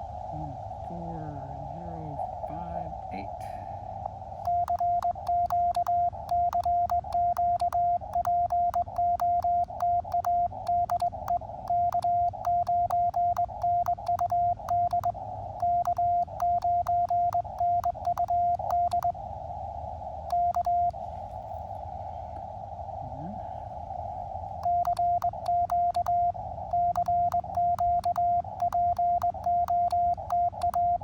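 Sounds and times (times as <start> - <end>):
receiver band hiss: 0.0 - 31.0
morse code beeping: 4.4 - 19.1, 20.3 - 21.0, 24.6 - 31.0
paddle contacts clicking: 4.4 - 19.1, 24.6 - 26.2, 26.8 - 31.0.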